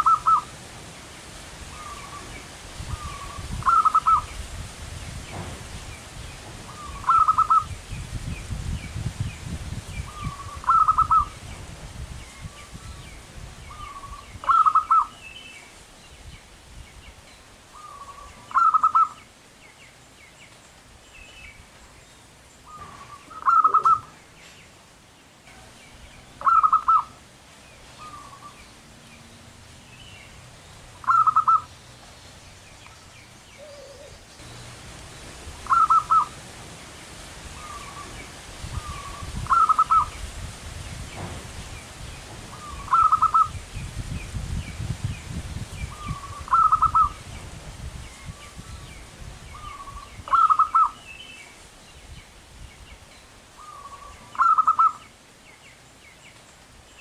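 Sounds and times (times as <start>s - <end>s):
dove cooing: 0.0s - 0.5s, 1.7s - 4.3s, 6.7s - 7.7s, 10.1s - 11.4s, 13.7s - 15.2s, 17.8s - 19.2s, 22.7s - 24.2s, 26.4s - 27.2s, 31.0s - 31.7s, 33.6s - 34.3s, 35.6s - 36.4s, 38.8s - 40.1s, 42.5s - 43.5s, 46.0s - 47.2s, 49.6s - 51.0s, 53.6s - 55.0s
small birds chirping: 0.0s - 57.0s.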